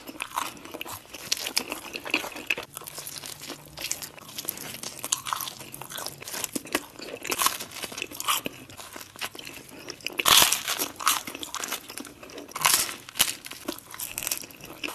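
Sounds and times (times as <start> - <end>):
crunchy bites and chewing: 0.0 - 14.9.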